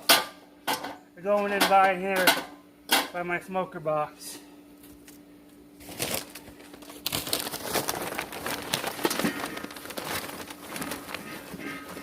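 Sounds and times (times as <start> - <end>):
charcoal clinking and scraping: 6.9 - 12.0.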